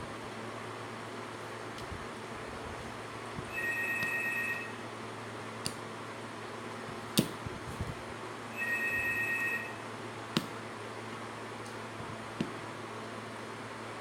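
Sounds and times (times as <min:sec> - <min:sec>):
two-note electronic tone: 0:03.5 - 0:04.8, 0:08.6 - 0:09.8.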